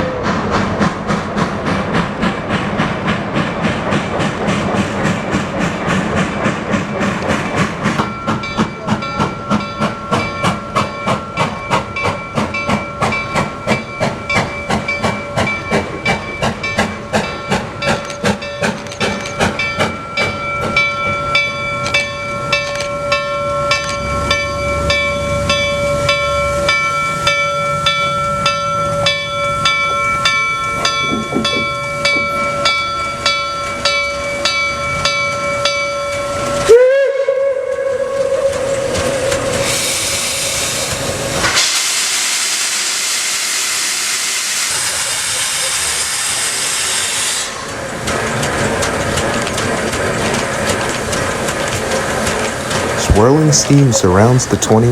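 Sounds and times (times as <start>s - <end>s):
steam hissing: 0.0s - 22.5s, 38.3s - 54.8s
steam locomotive rhythmic beat: 0.0s - 54.9s.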